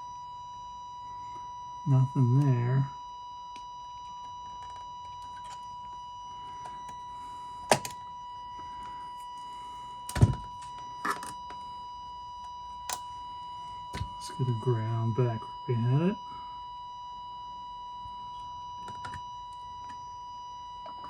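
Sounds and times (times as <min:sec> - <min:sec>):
buzzy test tone: 0:01.8 - 0:03.0, 0:14.0 - 0:16.4.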